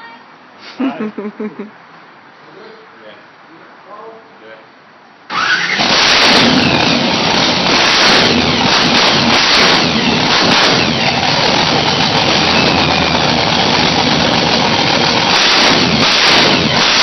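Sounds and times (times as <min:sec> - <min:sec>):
supercharged engine running loud: 0:05.3 - 0:17.0.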